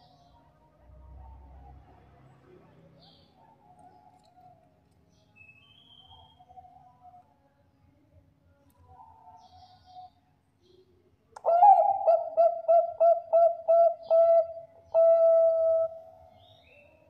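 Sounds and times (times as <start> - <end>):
dove cooing: 11.4 - 16.1.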